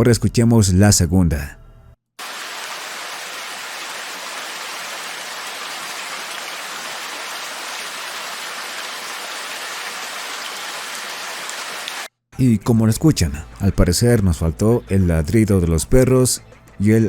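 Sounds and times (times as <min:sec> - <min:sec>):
heavy rain downpour: 0:02.2 - 0:12.1.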